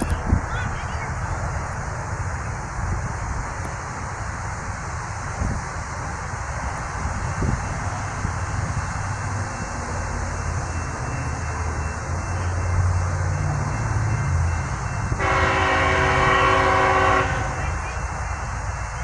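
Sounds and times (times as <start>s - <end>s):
locomotive engine rumbling: 0.0s - 19.0s
locomotive air horn chord: 15.1s - 18.0s.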